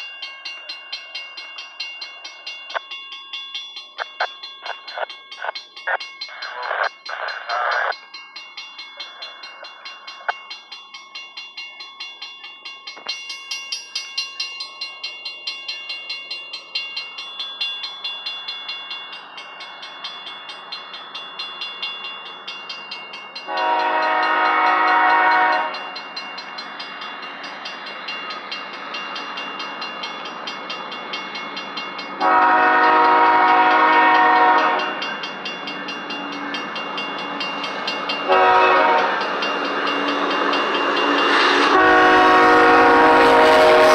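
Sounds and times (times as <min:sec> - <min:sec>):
diesel freight train: 0:00.0 - 0:43.9
locomotive air horn blasts: 0:23.5 - 0:25.9, 0:32.2 - 0:34.9, 0:38.3 - 0:39.2, 0:41.5 - 0:43.9.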